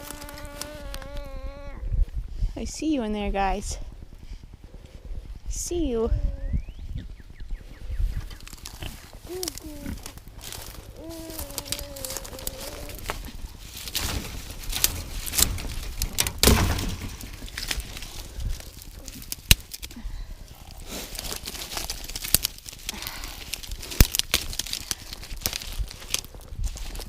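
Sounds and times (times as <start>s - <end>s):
dry twigs snapping: 0.0s - 1.4s, 8.3s - 27.0s
steady rustling: 7.0s - 27.0s.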